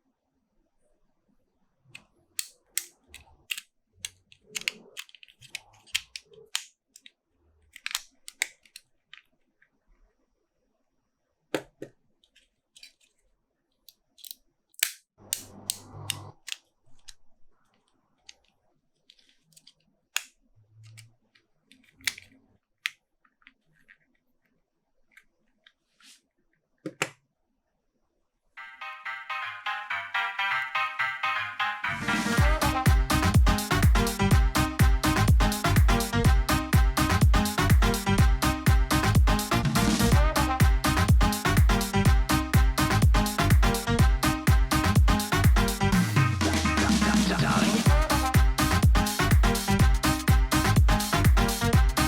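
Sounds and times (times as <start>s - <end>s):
plastic clicks and snaps: 2.0s - 9.3s, 13.8s - 17.2s, 21.7s - 24.1s.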